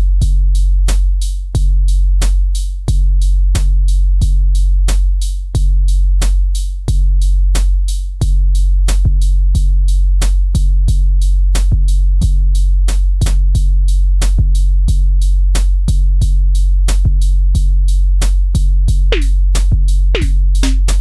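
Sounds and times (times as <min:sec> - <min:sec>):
deep steady bass: 0:00.0 - 0:04.8, 0:08.2 - 0:21.0
electronic music: 0:19.1 - 0:19.5, 0:20.2 - 0:21.0
drum machine ticks: 0:19.1 - 0:21.0.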